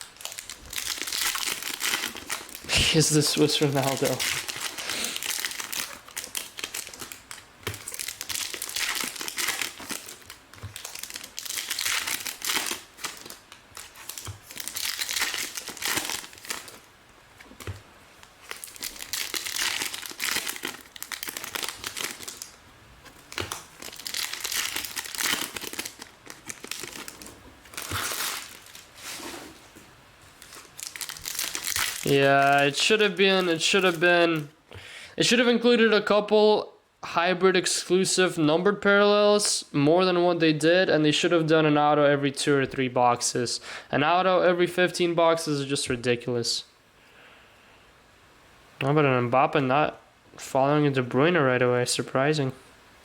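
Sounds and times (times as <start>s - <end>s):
plastic packaging crinkling: 0.0s - 29.6s, 30.3s - 34.5s.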